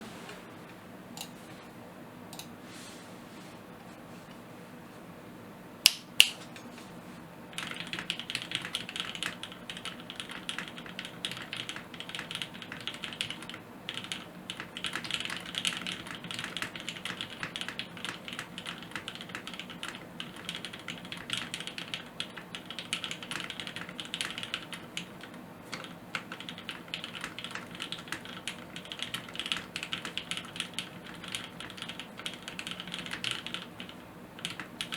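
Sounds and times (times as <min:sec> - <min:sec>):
faint steady hum: 0:00.0 - 0:34.9
sharp loud clicks: 0:05.9 - 0:06.4
mechanical keyboard typing: 0:07.6 - 0:34.9.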